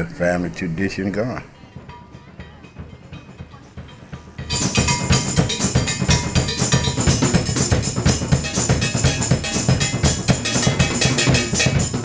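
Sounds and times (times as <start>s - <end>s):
drums: 0.9s - 12.0s
tambourine: 4.4s - 12.0s.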